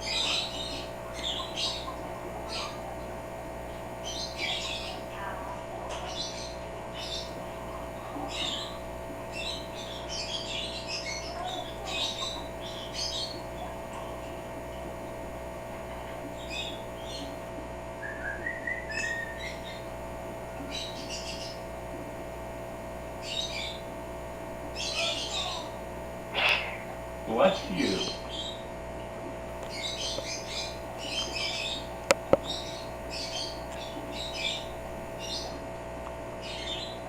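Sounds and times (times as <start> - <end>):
electrical hum: 0.0 - 37.0
parrot whistled chirp: 18.0 - 19.8
parrot chirping and squeaking: 26.4 - 26.9.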